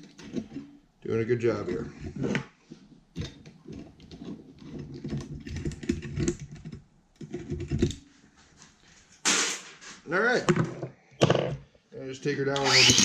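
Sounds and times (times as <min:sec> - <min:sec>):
hard objects clicking and clattering: 0:01.6 - 0:08.1.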